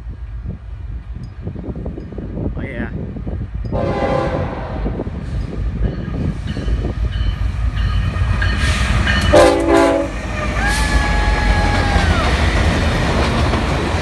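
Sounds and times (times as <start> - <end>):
diesel locomotive rumble: 0.0 - 14.0
locomotive air horn blasts: 3.7 - 5.1, 9.3 - 11.0.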